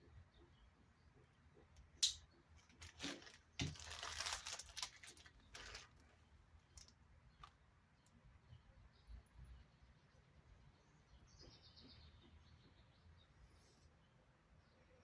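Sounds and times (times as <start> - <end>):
packaging crinkling and rustling: 2.6 - 7.5.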